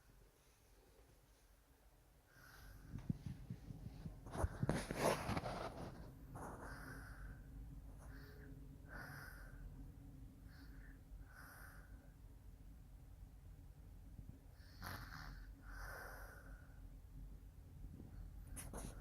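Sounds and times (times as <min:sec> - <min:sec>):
quiet snoring: 0:14.5 - 0:16.8.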